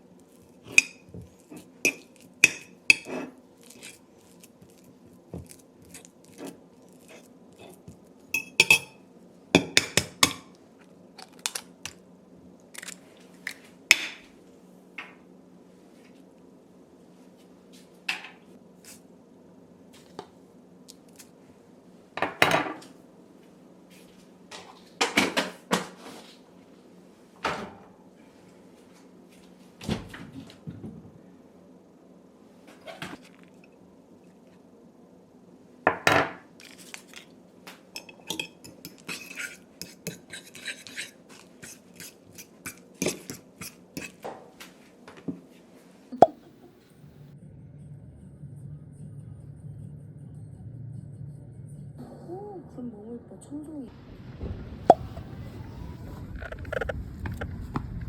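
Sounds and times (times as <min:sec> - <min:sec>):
low steady hum: 0:00.0 - 0:24.6, 0:46.0 - 0:58.0
dishes and utensils clinking: 0:00.7 - 0:04.0, 0:08.4 - 0:09.0, 0:38.0 - 0:44.2.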